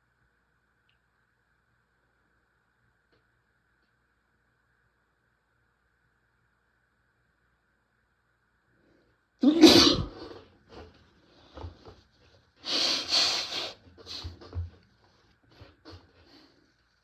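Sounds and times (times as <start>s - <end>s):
person sneezing: 9.4s - 10.4s
sniffs and breaths: 9.8s - 17.0s.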